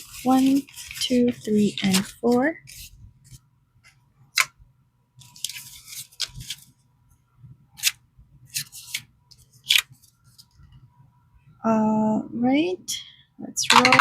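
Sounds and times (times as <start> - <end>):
paper rustling and crinkling: 0.0 - 3.4, 5.2 - 6.8, 7.8 - 10.6.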